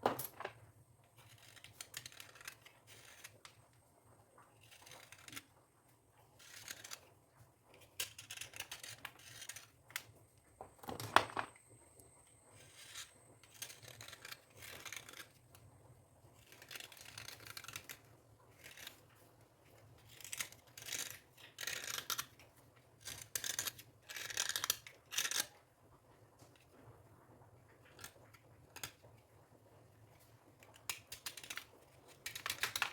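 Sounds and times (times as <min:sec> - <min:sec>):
scratchy scraping strokes: 0:01.2 - 0:03.6, 0:04.5 - 0:05.5, 0:06.2 - 0:07.1, 0:12.5 - 0:15.4, 0:16.4 - 0:22.3.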